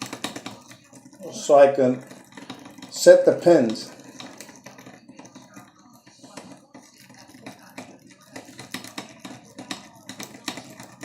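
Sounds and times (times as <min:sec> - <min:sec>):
lockpick clicking and scratching: 0:02.0 - 0:11.0.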